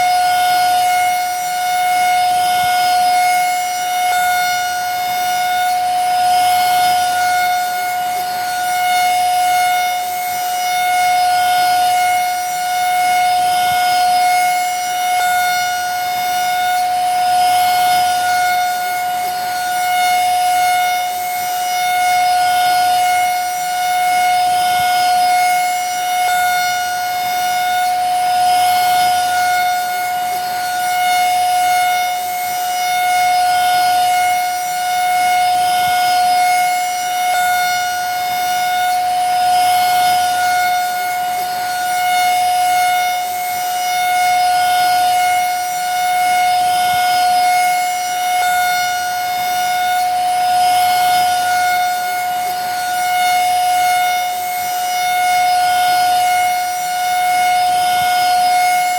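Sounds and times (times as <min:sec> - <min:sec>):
vacuum cleaner running: 0:00.0 - 0:58.9.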